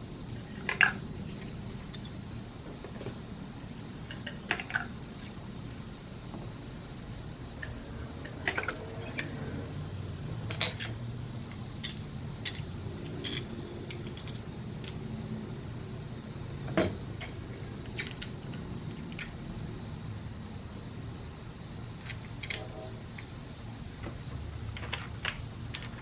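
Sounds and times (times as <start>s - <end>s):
low background hum: 0.0s - 26.0s
hand tools clicking and clinking: 11.8s - 15.0s, 17.2s - 19.3s.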